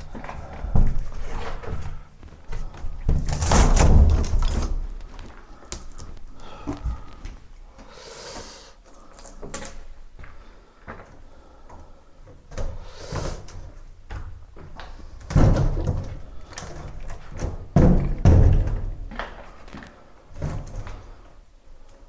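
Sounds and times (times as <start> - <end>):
knocks and heavy thuds: 17.3 - 19.2.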